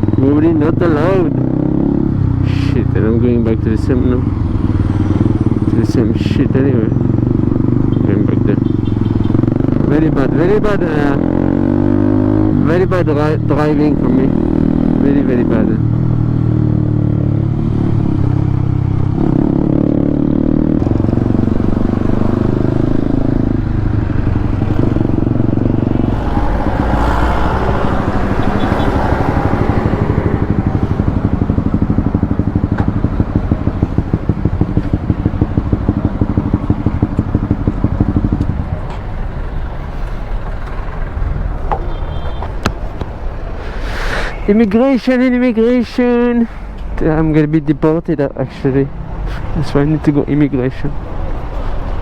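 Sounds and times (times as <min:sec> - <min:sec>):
motorcycle engine running: 0:00.0 - 0:43.2
rushing noise: 0:24.1 - 0:31.4.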